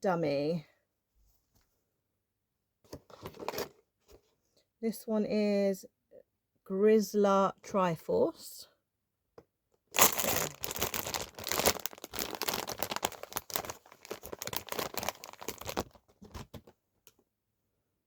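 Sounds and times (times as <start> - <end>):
packaging crinkling and rustling: 3.0 - 3.8, 9.9 - 16.8
packaging ripping: 9.9 - 16.7.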